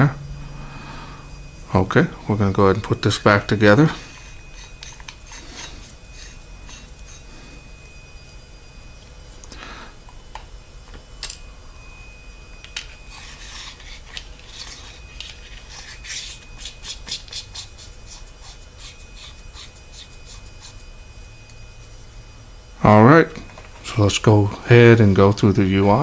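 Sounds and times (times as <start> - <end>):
metal threads scraping: 1.2 - 8.0, 12.8 - 21.0.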